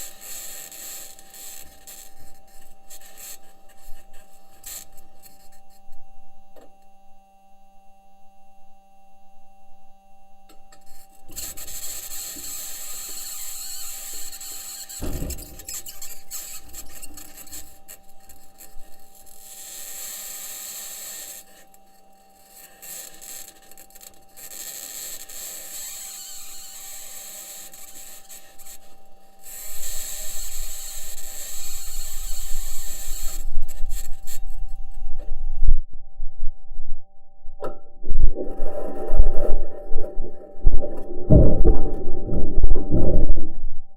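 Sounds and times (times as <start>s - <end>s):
metal wheels scraping over rock: 11.3s - 18.8s
sharp knock: 15.0s - 15.8s.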